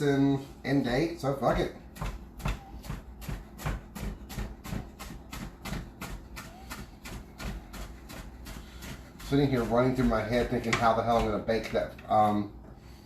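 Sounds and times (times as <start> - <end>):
knife chopping on cutting board: 1.6 - 11.8.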